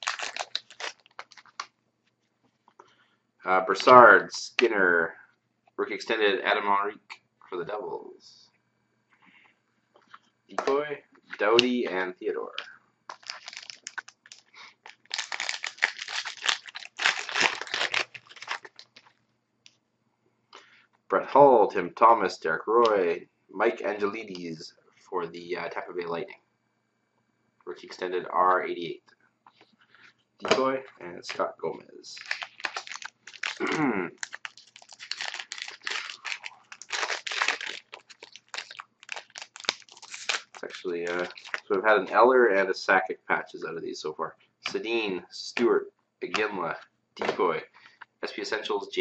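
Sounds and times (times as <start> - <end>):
plastic wrapper crinkling and tearing: 0.0 - 1.7, 13.1 - 19.1, 32.1 - 41.8.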